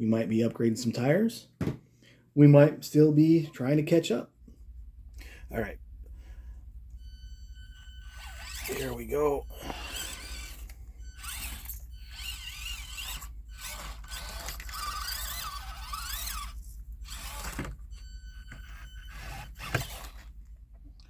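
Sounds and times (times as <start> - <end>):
small electric motor whining: 5.1 - 20.5.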